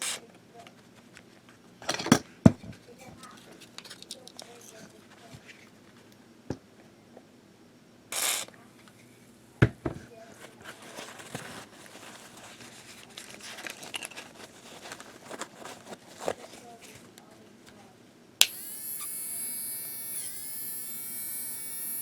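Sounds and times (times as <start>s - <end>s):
sharp clicks: 18.4s - 21.1s.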